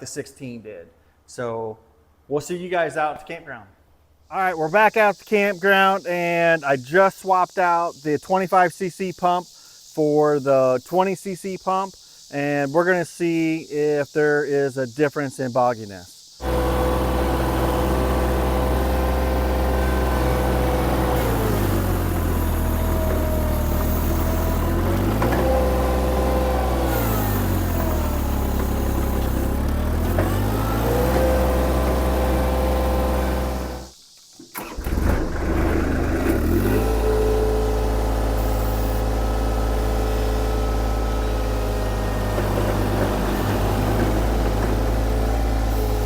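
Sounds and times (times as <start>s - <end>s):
mini skid steer engine bogging: 16.4s - 46.0s.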